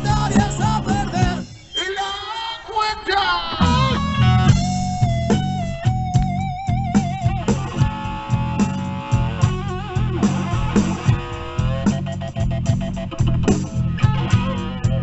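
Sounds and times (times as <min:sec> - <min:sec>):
bass guitar: 0:00.0 - 0:01.7, 0:03.6 - 0:15.0
steady drum beat: 0:00.0 - 0:01.7, 0:03.6 - 0:15.0
lead guitar with vibrato: 0:03.6 - 0:15.0.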